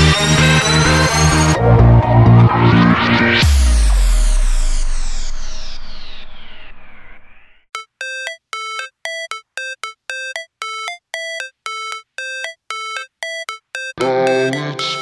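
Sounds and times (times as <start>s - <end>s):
electronic music with falling tones: 7.7s - 15.0s
bell-like synth melody: 7.8s - 15.0s.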